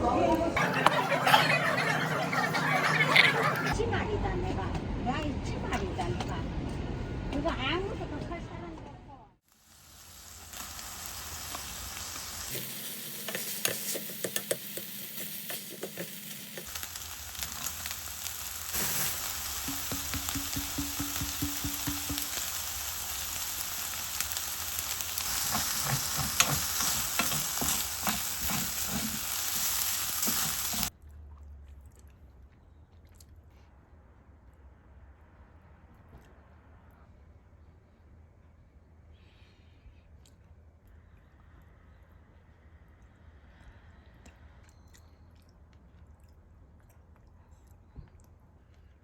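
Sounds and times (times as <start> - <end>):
food sizzling in a frying pan: 9.5 - 31.0
utensil scraping a pan: 25.2 - 30.9.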